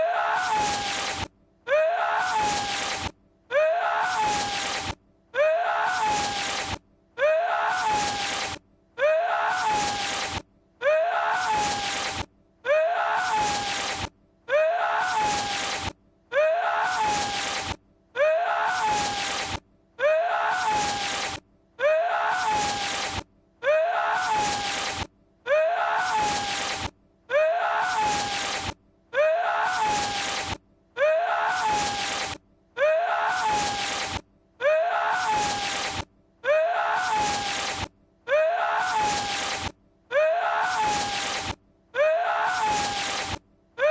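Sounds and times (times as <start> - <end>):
man's strained cry like a sneeze: 0.0 - 34.0, 34.6 - 43.9.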